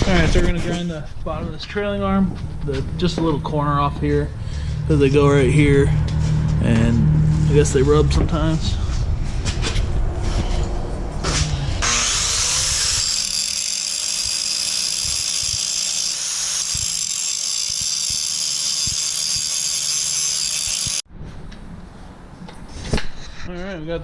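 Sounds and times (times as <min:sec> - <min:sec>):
power grinder grinding metal: 0:11.3 - 0:21.0.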